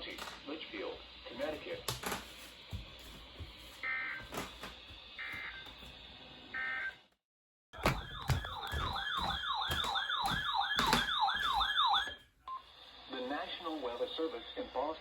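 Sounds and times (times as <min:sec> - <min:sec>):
warbling electronic siren: 0:07.8 - 0:12.2.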